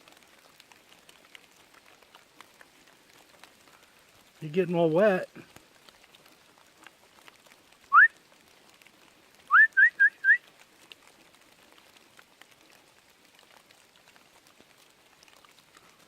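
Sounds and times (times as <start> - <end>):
person whistling: 7.9 - 8.1, 9.5 - 10.4.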